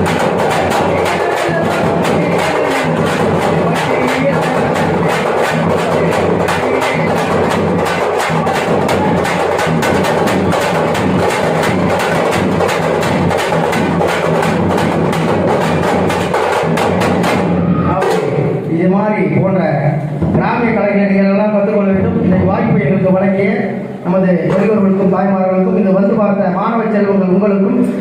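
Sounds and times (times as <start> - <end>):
frame drums beaten with sticks: 0.0 - 18.7.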